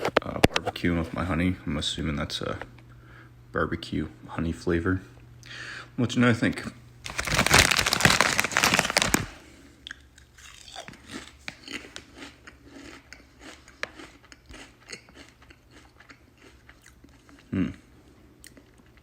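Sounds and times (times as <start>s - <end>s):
crisp packet rustling: 7.0s - 9.4s
chewing crunchy chips: 7.0s - 19.0s.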